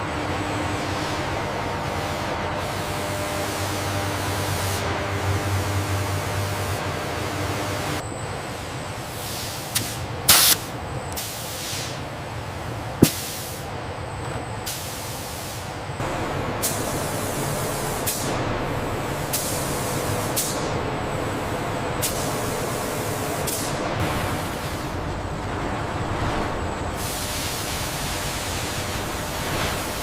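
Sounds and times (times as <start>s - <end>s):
industrial workshop noise: 0.0s - 30.0s
hissing air bursts: 9.2s - 12.0s, 13.0s - 13.7s, 16.6s - 20.7s.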